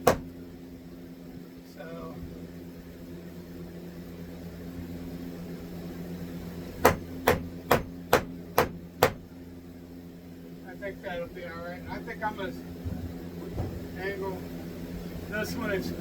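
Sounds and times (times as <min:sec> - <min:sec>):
hammer blows on wood: 0:00.0 - 0:00.3, 0:06.8 - 0:09.2
steady low hum: 0:00.0 - 0:16.0.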